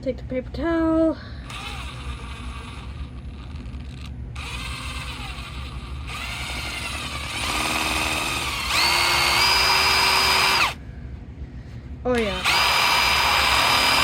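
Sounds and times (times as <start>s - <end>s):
power drill whine: 1.4s - 10.8s, 12.2s - 14.0s.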